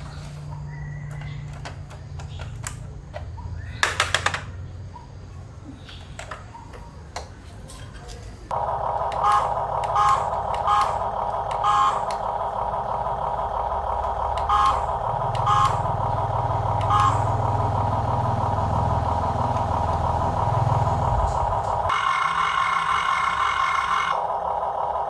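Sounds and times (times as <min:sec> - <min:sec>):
low motor hum: 0:00.0 - 0:03.8, 0:08.5 - 0:25.0
electronic engine drone: 0:08.5 - 0:25.0.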